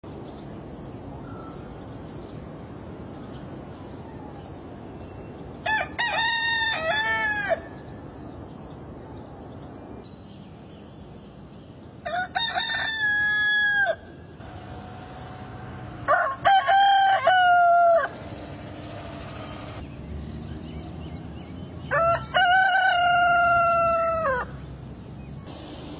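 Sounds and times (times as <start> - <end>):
rooster crowing: 12.1 - 18.4, 21.9 - 24.5.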